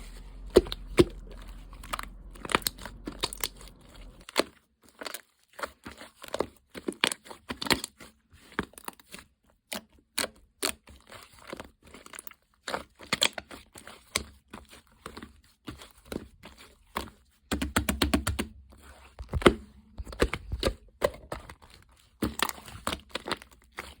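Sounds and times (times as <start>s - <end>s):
slime squished by hand: 0.0s - 4.4s.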